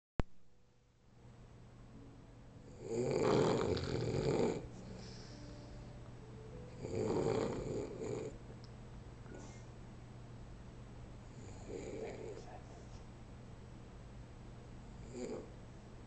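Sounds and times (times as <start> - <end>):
steady low hum: 0.2 - 16.0
man snoring: 2.7 - 5.3, 6.8 - 8.4, 11.4 - 12.4, 15.0 - 15.5.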